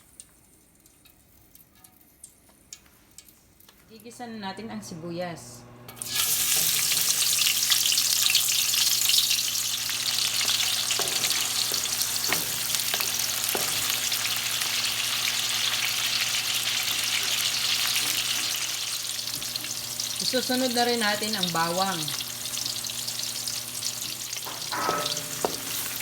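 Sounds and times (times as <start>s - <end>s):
onion sizzling in oil: 6.0s - 26.0s
utensil knocking against pan: 24.5s - 26.0s.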